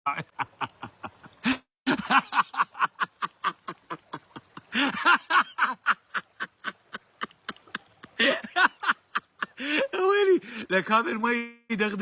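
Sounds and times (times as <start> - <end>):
person laughing hard: 0.2 - 9.9.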